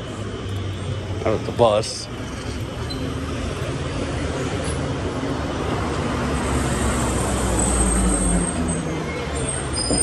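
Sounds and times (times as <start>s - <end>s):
bus engine rumble: 0.0s - 10.0s.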